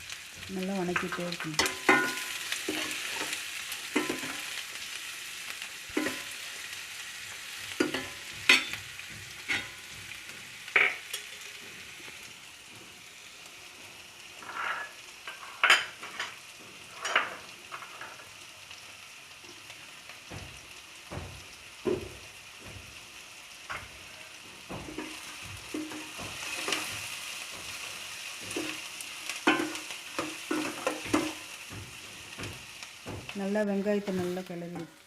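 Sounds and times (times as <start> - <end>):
frying in oil sizzle: 0.0 - 35.0
spoon scraping and knocking pan: 0.2 - 4.9, 5.9 - 11.8, 14.4 - 18.2, 20.3 - 23.0, 23.6 - 33.4.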